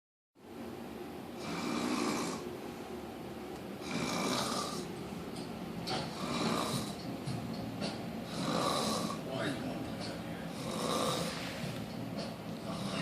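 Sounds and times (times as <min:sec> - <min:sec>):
woman snoring heavily: 0:01.4 - 0:02.4, 0:03.8 - 0:04.9, 0:06.1 - 0:07.0, 0:08.3 - 0:09.2, 0:10.5 - 0:11.5, 0:12.7 - 0:13.0.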